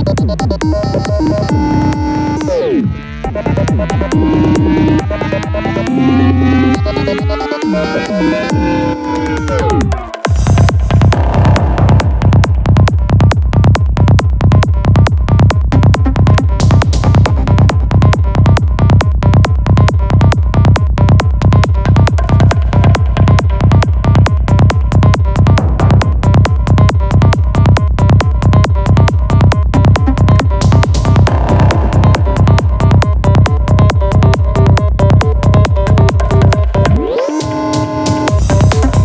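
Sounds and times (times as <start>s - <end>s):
electronic trance music: 0.0s - 39.0s
kick drum: 9.6s - 37.0s, 38.3s - 39.0s.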